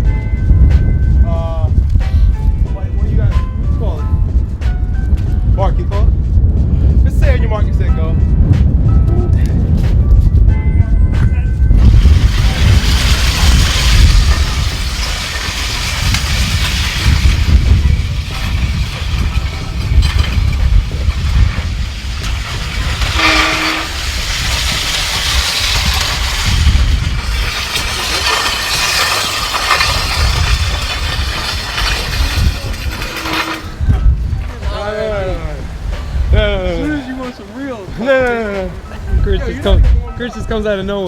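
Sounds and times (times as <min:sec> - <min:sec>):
sleds grinding along ground: 0:11.7 - 0:39.7.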